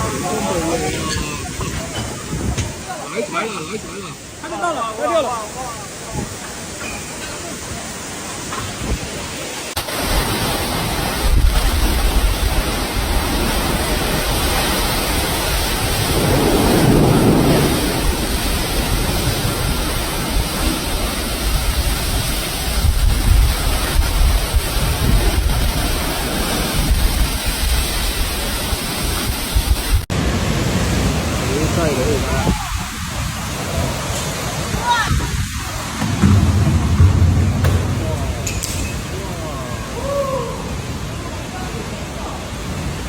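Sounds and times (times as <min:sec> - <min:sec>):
wind buffeting microphone: 0:00.0 - 0:03.0, 0:10.1 - 0:30.1, 0:30.7 - 0:40.0
gale-force wind and rain: 0:00.0 - 0:43.0.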